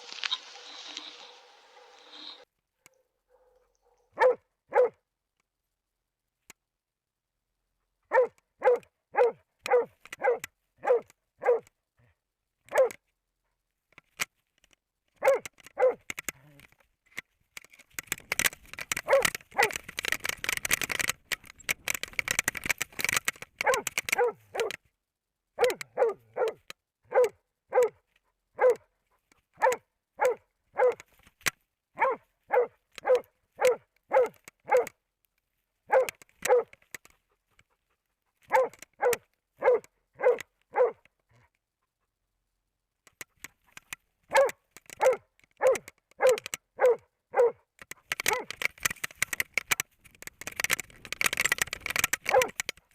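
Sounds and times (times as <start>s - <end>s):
dog barking: 0.1s - 5.0s, 8.1s - 11.7s, 12.7s - 13.0s, 15.2s - 16.0s, 19.0s - 19.8s, 23.6s - 24.8s, 25.6s - 28.0s, 28.6s - 28.9s, 29.6s - 31.0s, 32.0s - 34.9s, 35.9s - 36.8s, 38.5s - 41.4s, 44.3s - 47.6s, 48.2s - 48.5s, 52.2s - 52.6s.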